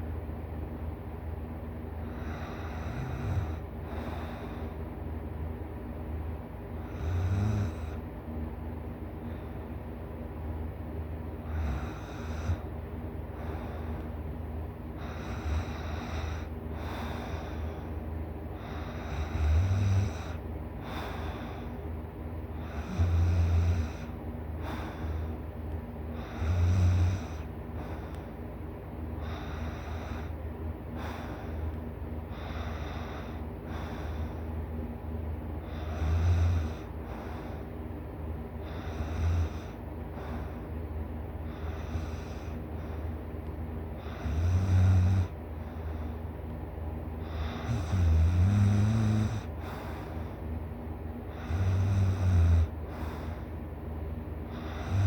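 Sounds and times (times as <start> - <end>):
steady low hum: 0.0 - 55.0
person snoring loudly: 6.9 - 8.0, 11.5 - 12.6, 18.9 - 20.4, 22.6 - 24.1, 26.2 - 27.5, 35.7 - 36.9, 38.8 - 39.8, 44.0 - 45.4, 47.3 - 49.5, 51.3 - 52.8, 54.6 - 55.0
deep snorts: 11.5 - 12.7, 22.6 - 25.2, 26.2 - 28.1, 35.7 - 37.6, 38.7 - 40.6, 41.6 - 43.0, 44.0 - 45.4, 47.2 - 50.4, 51.3 - 53.5, 54.6 - 55.0.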